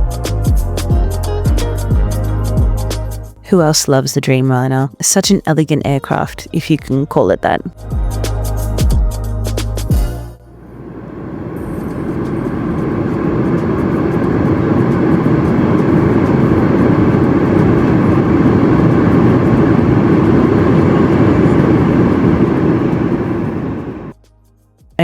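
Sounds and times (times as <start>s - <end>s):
airplane cabin noise: 9.9s - 24.2s.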